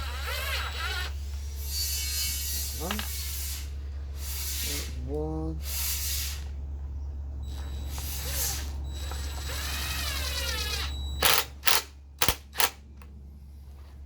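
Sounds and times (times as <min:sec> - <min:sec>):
steady low hum: 0:00.0 - 0:14.0
sharp clicks: 0:10.5 - 0:13.1.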